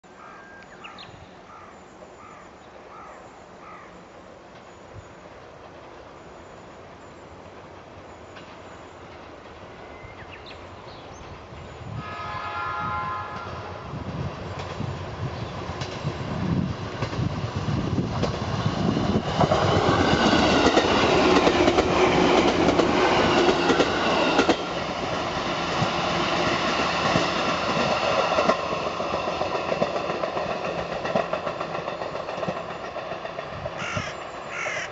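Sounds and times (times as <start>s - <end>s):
electronic train horn: 12.0s - 14.0s
train wheels clacking over rail joints: 18.2s - 24.8s, 25.6s - 34.8s.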